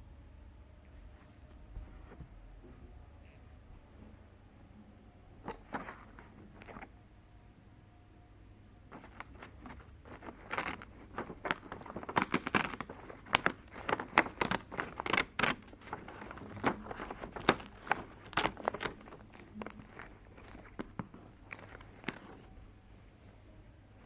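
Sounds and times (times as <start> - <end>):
wrapping crinkling and tearing: 5.5 - 6.9, 8.9 - 22.5.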